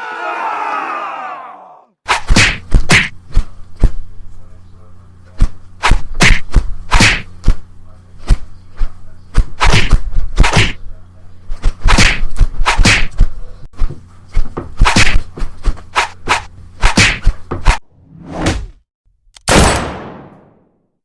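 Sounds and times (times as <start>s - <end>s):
faint low hum: 3.4s - 5.8s.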